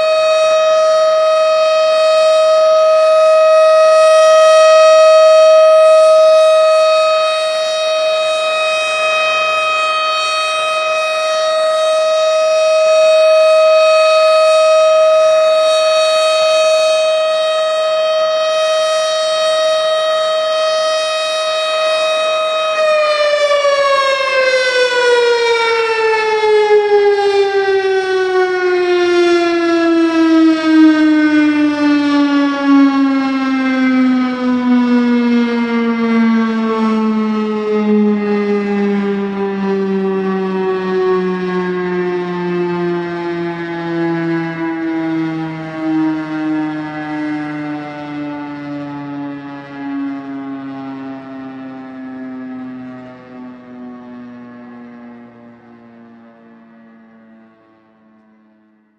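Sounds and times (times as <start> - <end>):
warning siren wailing: 0.0 - 58.9.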